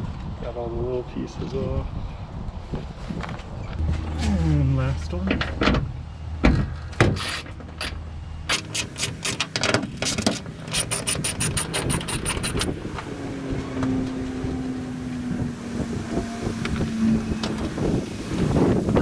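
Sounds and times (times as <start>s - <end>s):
wind on microphone: 0.0s - 6.8s, 9.8s - 19.0s
steady low hum: 3.6s - 19.0s
socket ratchet clicking: 8.5s - 12.7s.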